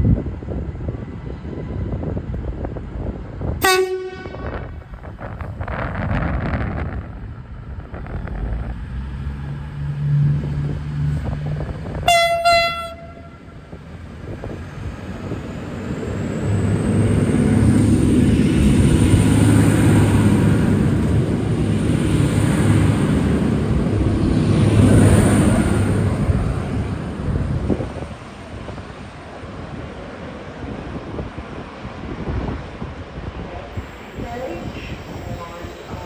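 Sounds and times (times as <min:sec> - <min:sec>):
diesel train engines whining: 0:00.3 - 0:36.0
train horn toot: 0:03.6 - 0:04.7, 0:12.0 - 0:13.6.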